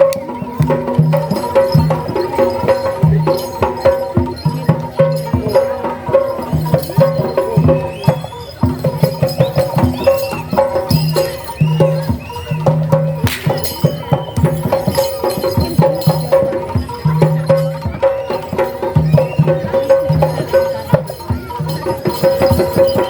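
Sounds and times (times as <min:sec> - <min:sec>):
drums and gong-chimes ensemble: 0:00.0 - 0:23.0
short high notes: 0:11.5 - 0:14.7.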